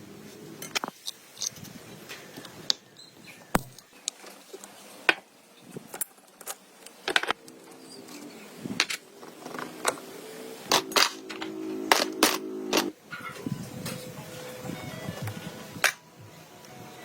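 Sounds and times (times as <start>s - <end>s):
low steady hum: 7.4s - 16.8s.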